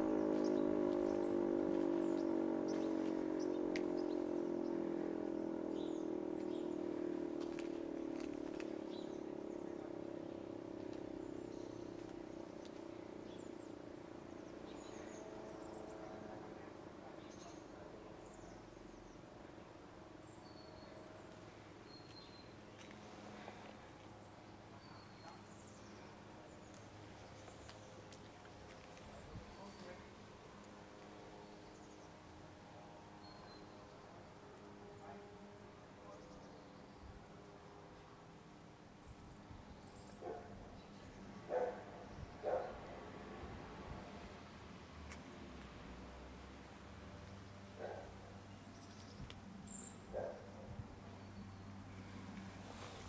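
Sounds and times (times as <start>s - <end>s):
electric siren howling: 0.0s - 8.6s.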